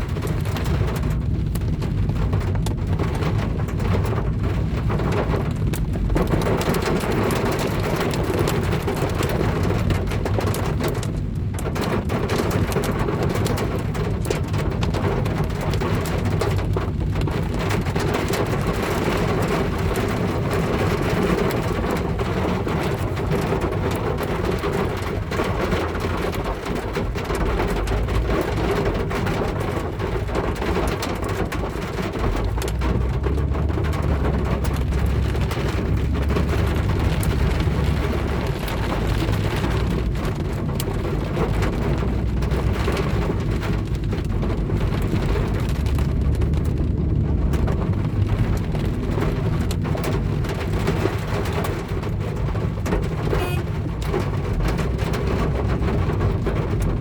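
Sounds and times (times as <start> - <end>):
rain and hail on car: 0.0 - 57.0
low rumble: 23.3 - 57.0.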